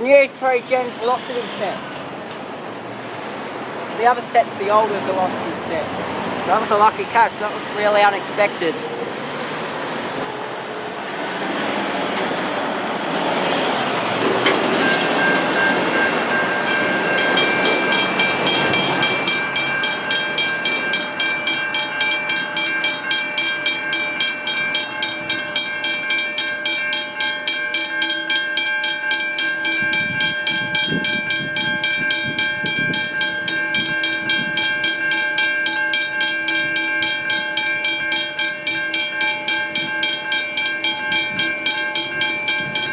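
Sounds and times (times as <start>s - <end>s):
train passing with rumble: 0.0s - 42.9s
level crossing bell ringing: 14.4s - 42.9s.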